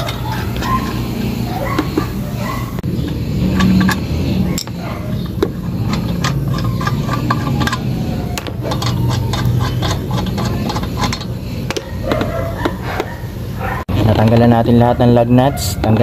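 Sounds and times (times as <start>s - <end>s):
steady low hum: 0.0s - 16.0s
lug wrench metallic clicks: 3.0s - 13.1s.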